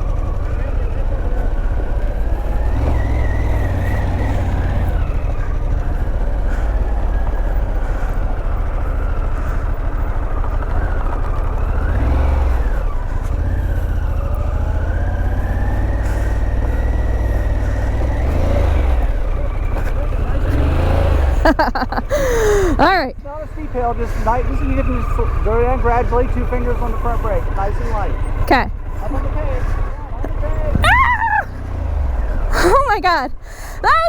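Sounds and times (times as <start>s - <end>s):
motorcycle engine revving: 0.0s - 34.0s.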